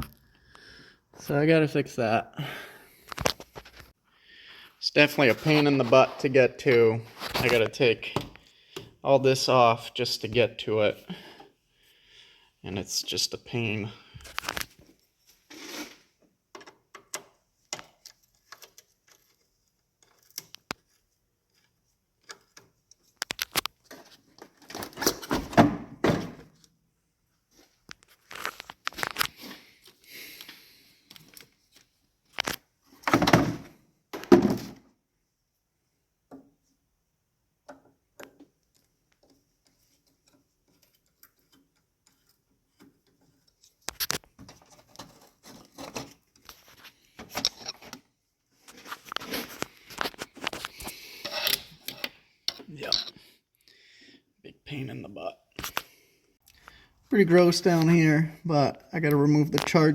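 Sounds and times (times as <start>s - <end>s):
tools and engine parts clanking: 47.2s - 48.0s.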